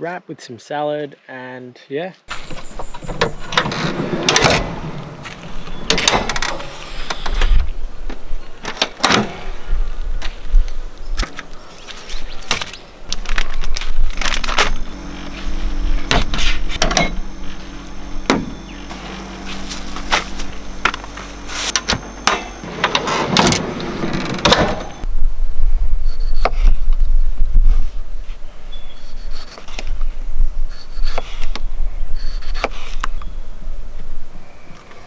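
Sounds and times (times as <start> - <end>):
steady low hum: 2.3 - 26.3
knocks and clicks of handled gear: 10.2 - 25.1.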